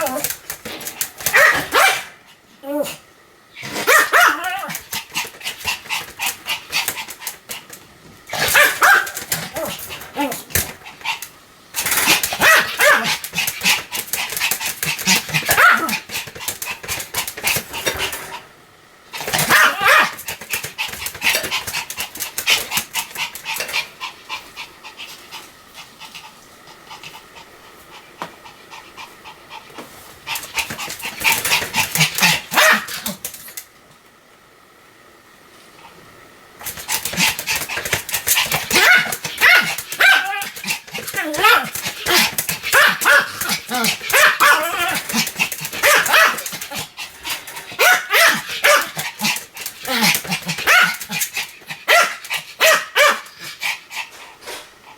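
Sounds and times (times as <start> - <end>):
small dog barking rapidly: 1.2 - 2.2, 3.8 - 4.8, 8.4 - 10.3, 12.0 - 13.2, 15.0 - 16.1, 19.3 - 20.2, 31.9 - 33.2, 38.6 - 46.8, 47.8 - 49.3, 49.9 - 51.2, 51.8 - 53.3.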